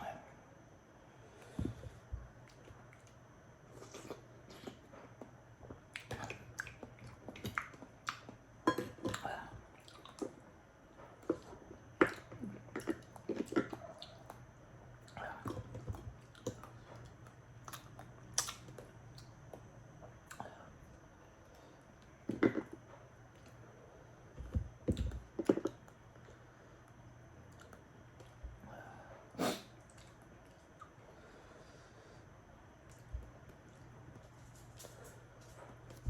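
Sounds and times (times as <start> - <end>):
wet chewing and mouth noises: 2.4 - 8.4, 9.1 - 10.4, 11.2 - 20.5.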